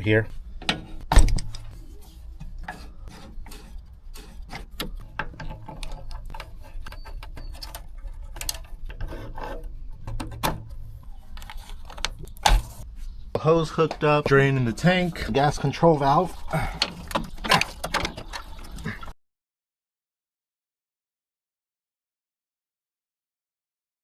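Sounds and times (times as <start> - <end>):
tools scraping and clicking on metal: 0.6 - 10.4.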